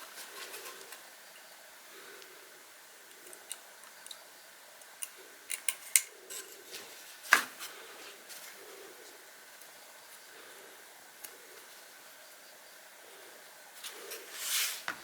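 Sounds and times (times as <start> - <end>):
tools clicking and tapping: 4.8 - 6.5.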